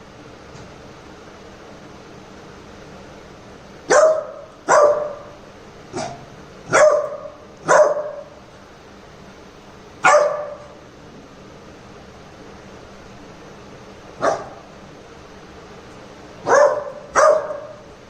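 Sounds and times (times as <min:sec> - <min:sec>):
puppy barking: 0:03.9 - 0:08.4, 0:10.0 - 0:10.8, 0:14.2 - 0:14.7, 0:16.4 - 0:17.9.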